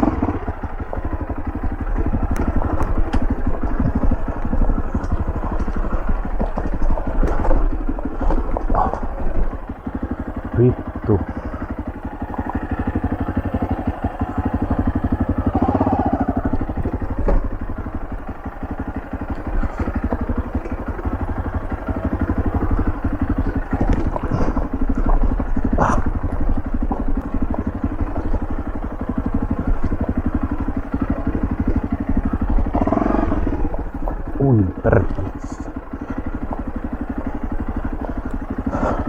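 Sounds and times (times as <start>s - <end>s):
motorcycle engine running: 0.0s - 39.0s
knocks and clatter on rocks: 2.2s - 9.6s, 17.0s - 18.0s.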